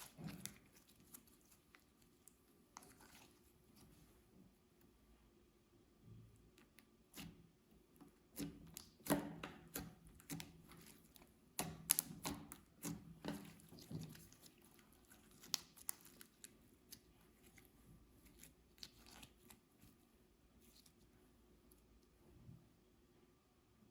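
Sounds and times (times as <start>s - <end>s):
slime sticky pops and crackles: 8.3s - 14.3s, 15.2s - 17.0s.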